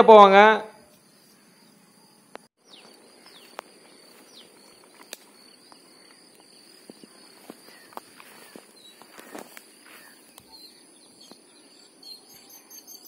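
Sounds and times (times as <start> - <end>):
bird chirps: 0.9 - 13.0
insect drone: 1.0 - 13.0.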